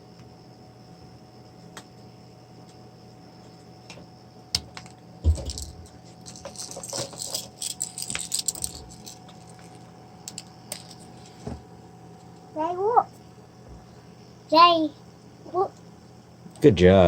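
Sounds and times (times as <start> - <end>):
small parts rattling: 4.8 - 11.4.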